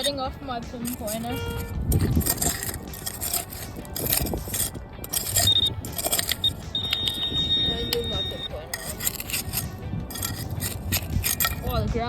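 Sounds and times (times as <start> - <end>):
shovel scraping into soil: 0.0 - 11.8
pinpointer high steady tone: 5.4 - 8.7.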